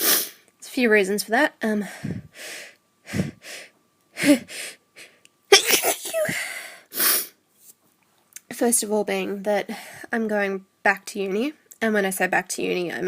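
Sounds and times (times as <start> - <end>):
sharp breaths drawn in: 1.9 - 5.2
woman sneezing: 5.5 - 6.5.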